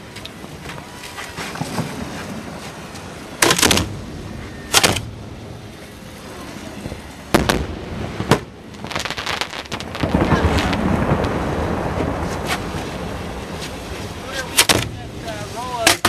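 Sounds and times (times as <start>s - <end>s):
fireworks reports: 0.0s - 16.0s
crackling firework bangs: 0.4s - 5.6s, 6.8s - 16.0s.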